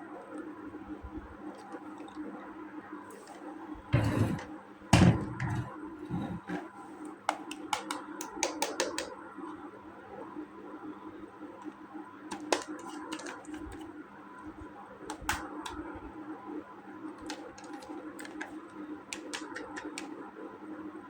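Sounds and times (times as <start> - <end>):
steady low hum: 3.6 - 6.8.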